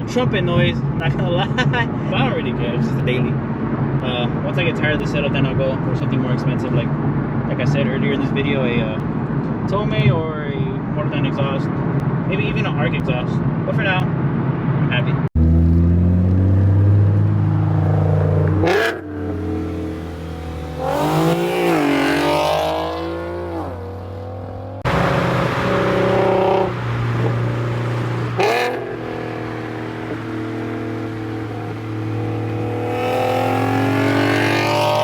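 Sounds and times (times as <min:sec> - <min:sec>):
car engine revving: 0:15.4 - 0:35.0.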